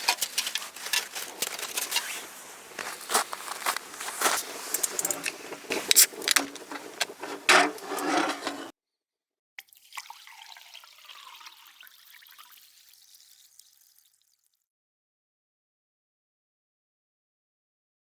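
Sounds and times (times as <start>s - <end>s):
crackling handling noise: 0.0s - 8.7s.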